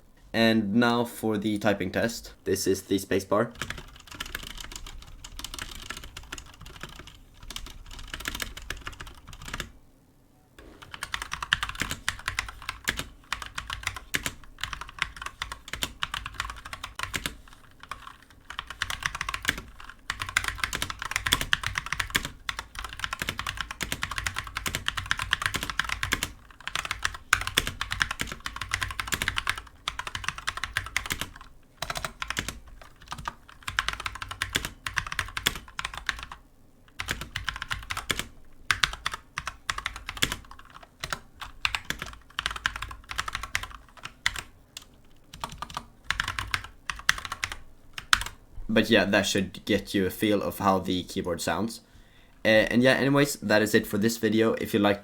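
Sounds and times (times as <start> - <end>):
mechanical keyboard typing: 3.6 - 9.7, 10.8 - 48.4.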